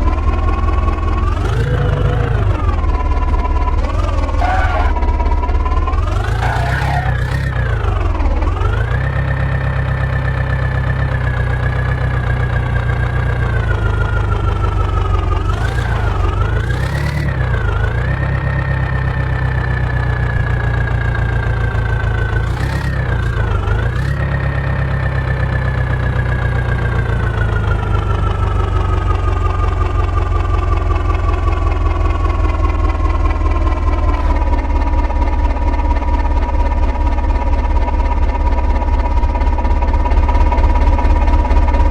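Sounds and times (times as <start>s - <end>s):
heavy diesel engine running: 0.0s - 41.9s.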